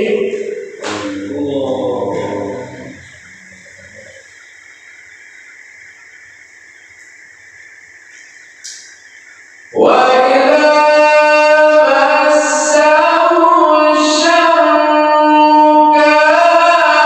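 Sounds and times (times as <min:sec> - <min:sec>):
man chanting melodious recitation: 0:00.0 - 0:04.2, 0:09.7 - 0:17.0.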